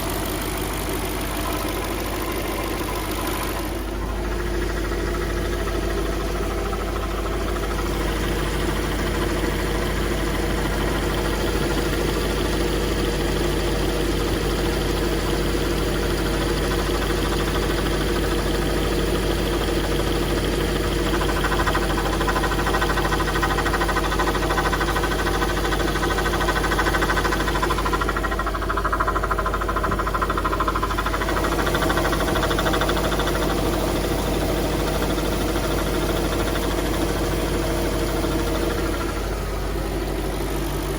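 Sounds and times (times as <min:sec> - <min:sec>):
car engine idling with a knock: 0:00.0 - 0:40.9.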